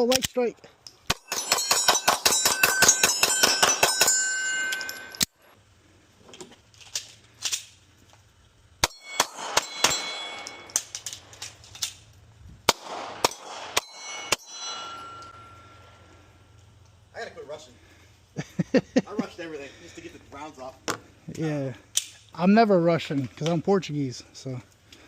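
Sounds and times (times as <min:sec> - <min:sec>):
steel targets ringing: 0:01.1 - 0:05.3, 0:08.8 - 0:11.0, 0:13.2 - 0:16.5
rapid gunshots: 0:08.8 - 0:10.3, 0:12.7 - 0:14.4.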